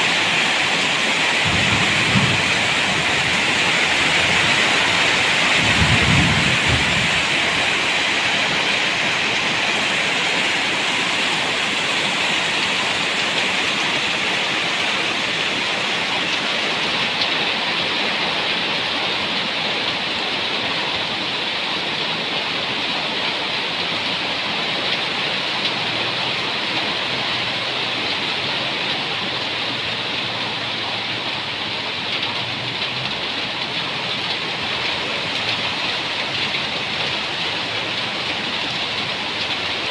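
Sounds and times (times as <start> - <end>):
heavy rain falling: 0.0 - 39.9
low rumble: 1.4 - 7.7.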